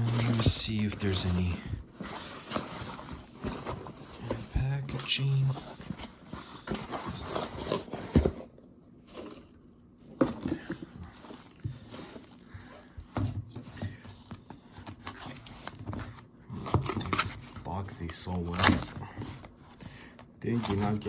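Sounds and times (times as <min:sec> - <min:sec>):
packaging rustling and crinkling: 0:00.0 - 0:21.0.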